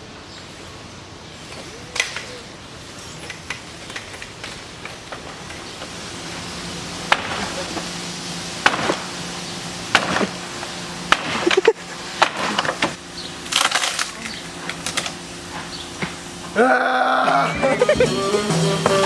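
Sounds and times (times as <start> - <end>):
steady low hum: 0.0 - 19.0
sharp cracks and knocks: 7.1 - 7.9, 8.6 - 9.1, 9.9 - 10.4, 11.1 - 16.2.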